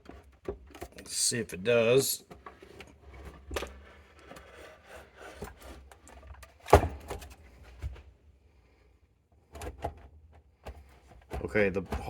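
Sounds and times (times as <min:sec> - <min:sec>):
scraping and rubbing of metal parts: 0:03.2 - 0:06.0.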